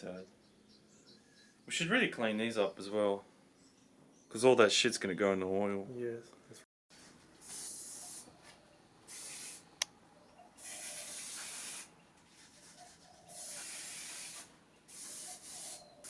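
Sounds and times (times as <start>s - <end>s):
aerosol can spraying: 7.4s - 8.3s, 9.1s - 9.7s, 10.6s - 11.9s, 13.3s - 16.0s.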